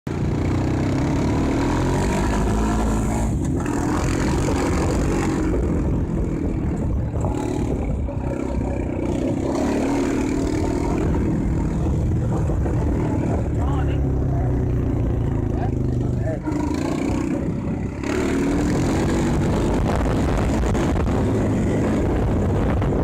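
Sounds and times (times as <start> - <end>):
steady rushing noise: 0.1 - 23.0
vehicle engine revving: 0.1 - 23.0.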